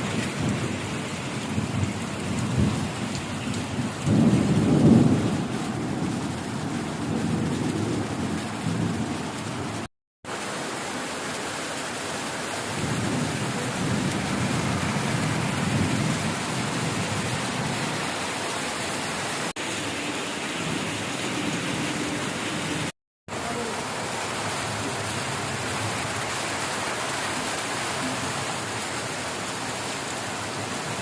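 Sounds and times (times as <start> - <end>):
low thunder rumbling: 0.0 - 9.8, 12.8 - 17.9
steady rain: 0.0 - 31.0.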